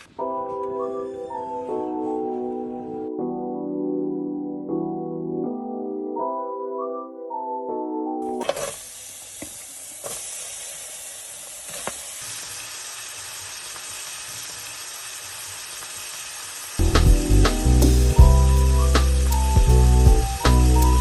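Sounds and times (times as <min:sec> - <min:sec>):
soft piano music: 0:00.0 - 0:08.4, 0:16.8 - 0:21.0
food sizzling in oil: 0:08.4 - 0:21.0.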